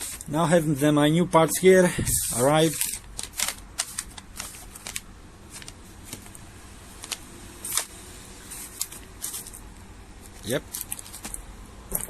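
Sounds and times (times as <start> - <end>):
packaging crinkling: 2.1 - 6.4, 7.0 - 11.5.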